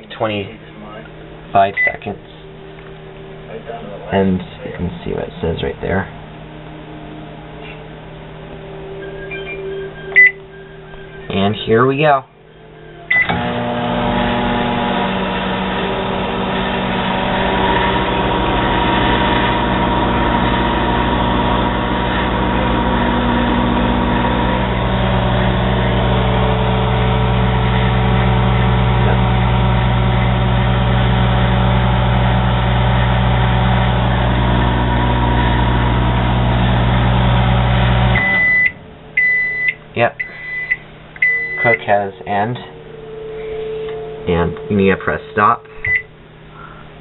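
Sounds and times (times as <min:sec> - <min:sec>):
microwave oven humming: 0:12.4 - 0:47.0.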